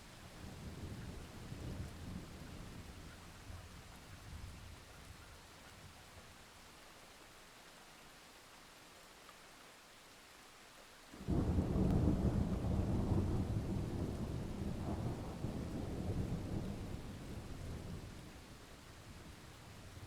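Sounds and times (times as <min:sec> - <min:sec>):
faint steady hiss: 0:00.0 - 0:20.0
thunder clap and rumble: 0:11.2 - 0:18.2.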